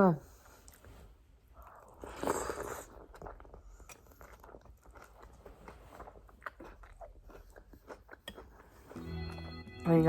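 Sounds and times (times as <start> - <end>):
chewing crunchy cereal: 1.6 - 9.4.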